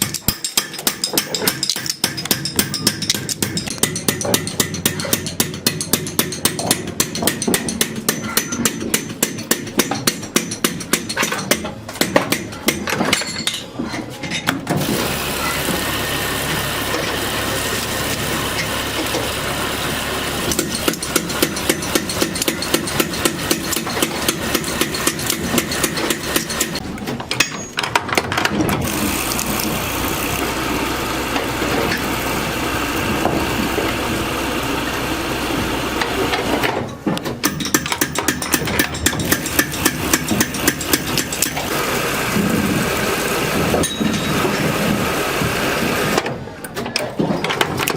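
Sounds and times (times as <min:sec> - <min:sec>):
machine humming: 0:14.8 - 0:26.8, 0:28.8 - 0:36.8.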